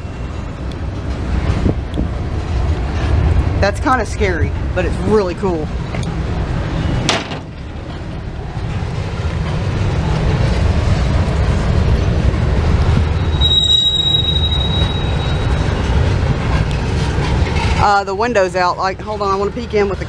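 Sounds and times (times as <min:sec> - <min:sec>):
train rumbling: 0:00.0 - 0:20.0
train wheel squeal: 0:13.0 - 0:17.8.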